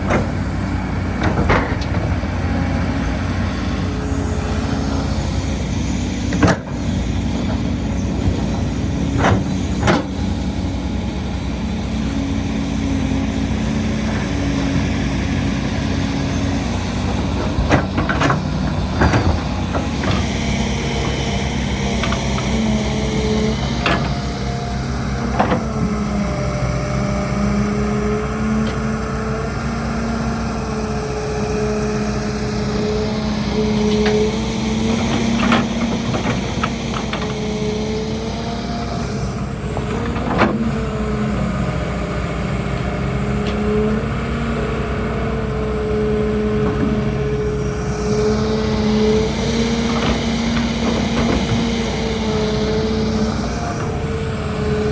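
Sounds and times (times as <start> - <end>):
sharp knocks and clanks: 0.0 - 2.3, 6.2 - 10.3, 16.5 - 21.3
diesel machinery running: 0.0 - 54.9.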